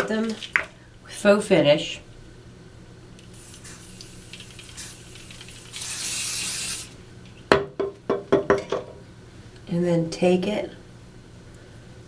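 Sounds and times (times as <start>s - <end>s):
hair spray hiss: 3.3s - 7.0s.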